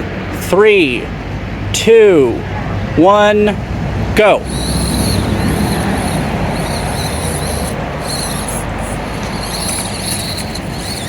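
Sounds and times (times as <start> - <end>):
electric motor high whine: 4.4 - 11.0
rough hiss: 4.4 - 11.0.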